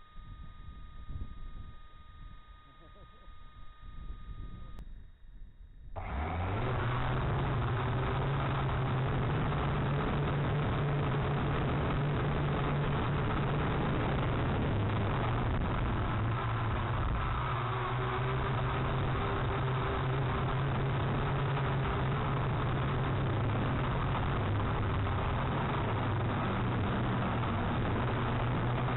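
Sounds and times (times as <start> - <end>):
wind noise: 0.2 - 2.4, 3.5 - 28.9
drone propellers humming: 6.0 - 28.9.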